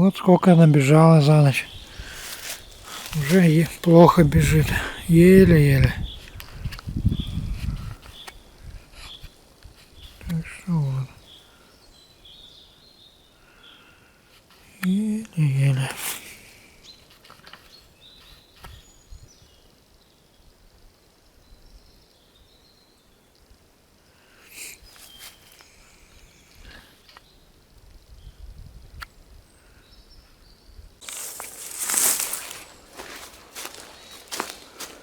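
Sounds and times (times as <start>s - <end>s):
faint outdoor ambience: 0.0s - 35.0s
loud rustling crunching: 0.7s - 6.5s, 31.0s - 35.0s.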